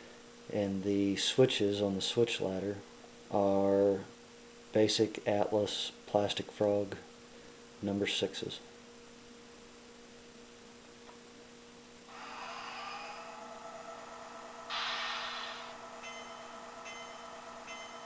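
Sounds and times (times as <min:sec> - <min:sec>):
electrical hum: 0:00.0 - 0:18.0
air hiss: 0:14.6 - 0:16.3
locomotive bell ringing: 0:15.6 - 0:18.0.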